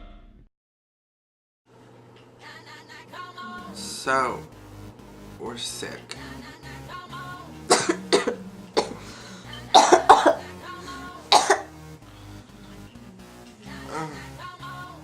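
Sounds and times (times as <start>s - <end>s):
quiet background music: 1.8s - 15.0s
people coughing: 7.7s - 10.5s, 11.3s - 11.8s.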